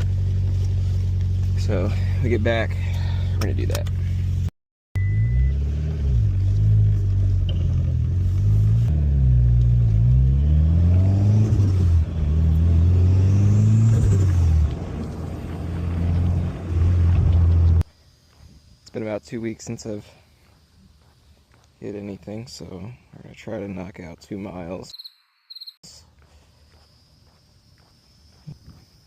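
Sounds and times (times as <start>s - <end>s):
car engine accelerating: 0.0s - 17.8s.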